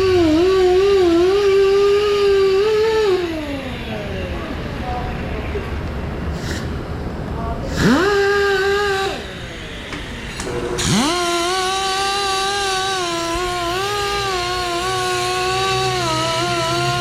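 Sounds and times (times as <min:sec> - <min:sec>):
wheel machine electric motor whining: 0:06.4 - 0:17.0.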